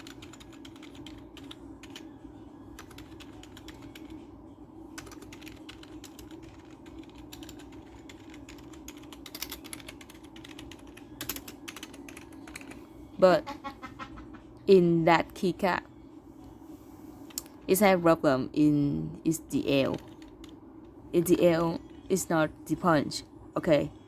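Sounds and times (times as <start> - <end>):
keypad keys clicking: 0.0 - 2.0, 2.8 - 4.2, 5.0 - 12.8, 19.9 - 20.5.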